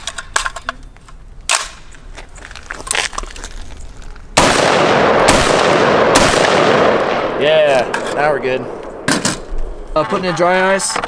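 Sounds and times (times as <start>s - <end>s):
metallic clicks of rifle handling: 0.0s - 2.0s
rapid rifle gunfire: 4.4s - 7.4s.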